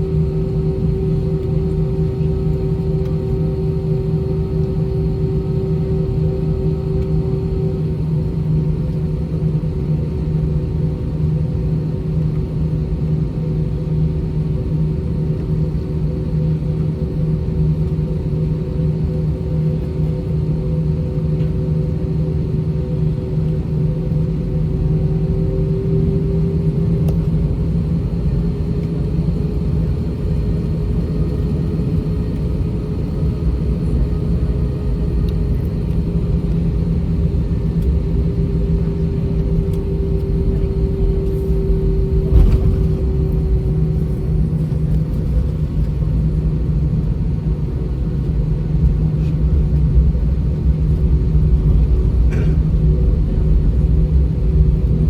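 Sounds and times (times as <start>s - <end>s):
aircraft engine drone: 0.0s - 55.0s
wheels rumbling on runway: 28.5s - 47.1s.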